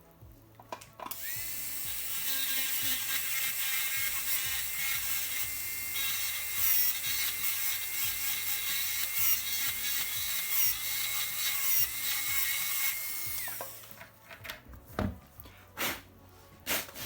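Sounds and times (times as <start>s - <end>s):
dental drill whining: 1.1s - 14.0s
soft knocks: 14.6s - 15.3s.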